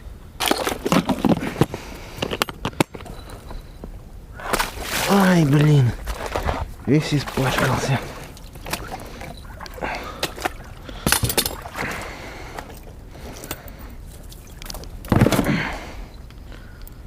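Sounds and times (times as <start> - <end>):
water sloshing and splashing: 0.4 - 1.9, 4.3 - 16.2.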